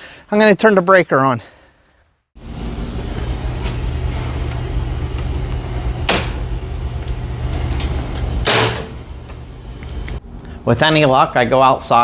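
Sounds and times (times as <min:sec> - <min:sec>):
steady low hum: 0:02.4 - 0:12.0.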